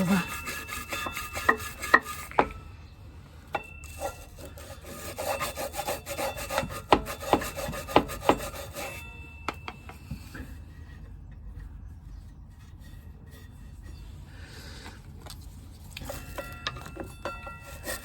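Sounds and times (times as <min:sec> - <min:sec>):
brush scrubbing metal: 0:00.0 - 0:02.6, 0:03.6 - 0:09.2, 0:15.8 - 0:18.0.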